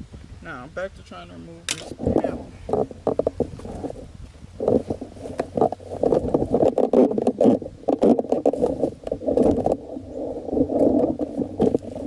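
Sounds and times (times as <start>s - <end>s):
sharp plastic clips clicking: 1.7s - 2.0s.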